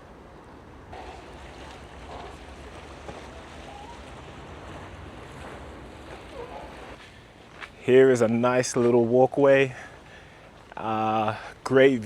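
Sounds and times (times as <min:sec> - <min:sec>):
water: 0:00.0 - 0:08.0
distant boats: 0:00.0 - 0:12.0
wind: 0:00.0 - 0:12.0.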